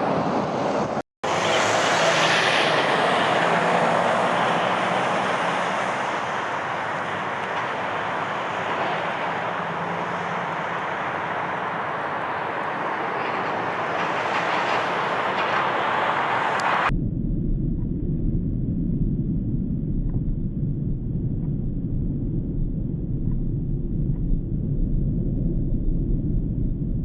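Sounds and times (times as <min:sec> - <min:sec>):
jet airliner engine rushing: 0:00.0 - 0:16.9.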